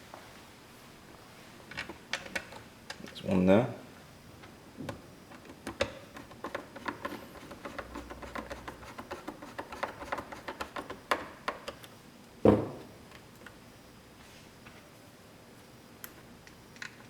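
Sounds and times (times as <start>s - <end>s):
single knock: 12.5s - 12.8s.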